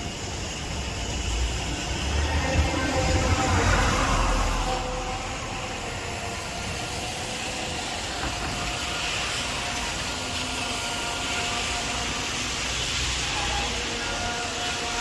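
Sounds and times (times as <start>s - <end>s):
rain and wind hiss: 0.0s - 15.0s.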